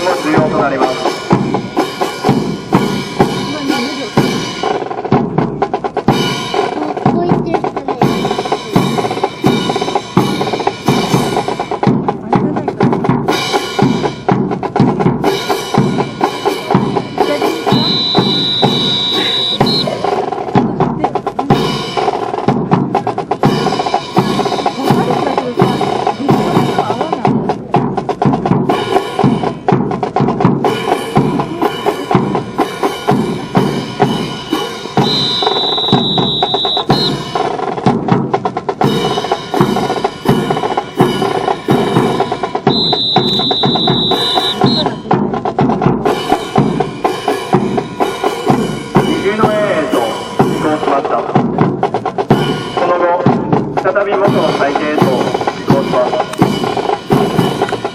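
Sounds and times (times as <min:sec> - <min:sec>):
marching snare and bass drums: 0:00.0 - 0:57.9
high piercing tone: 0:17.6 - 0:20.0, 0:35.0 - 0:37.2, 0:42.7 - 0:45.1.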